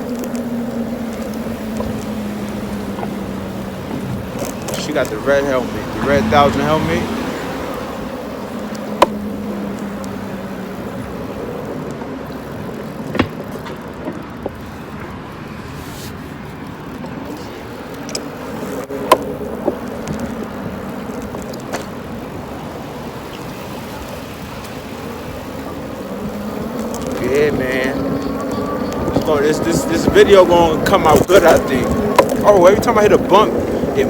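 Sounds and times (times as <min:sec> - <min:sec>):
wind and road noise: 0:00.0 - 0:34.0
sharp knocks: 0:13.1 - 0:14.6.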